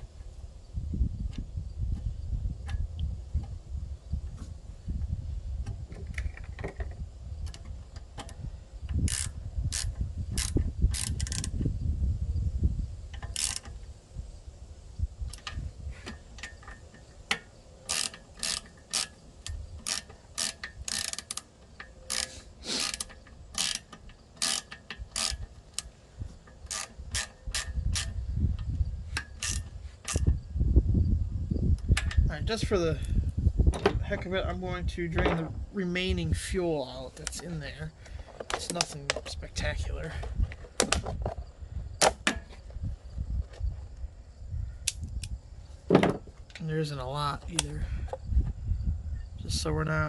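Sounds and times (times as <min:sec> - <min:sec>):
ratchet wrench clicking: 0:08.2 - 0:11.6, 0:13.1 - 0:13.8, 0:15.3 - 0:25.9, 0:26.5 - 0:30.3.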